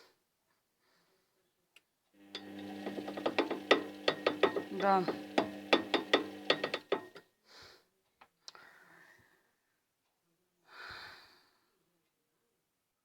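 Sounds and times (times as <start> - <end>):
motor hum: 2.2 - 7.2
washing machine drum knocking: 2.2 - 7.2.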